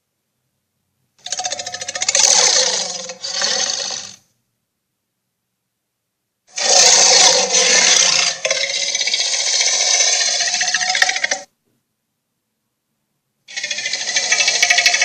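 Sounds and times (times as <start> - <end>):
rough rattling monster growl: 1.2 - 4.2, 6.5 - 11.5, 13.5 - 15.0.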